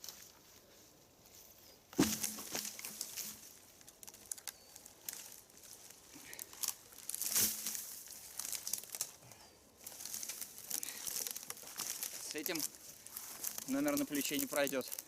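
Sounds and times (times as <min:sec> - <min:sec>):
dry leaves rustling and crackling: 0:00.0 - 0:15.0
dull thump: 0:02.0 - 0:03.4.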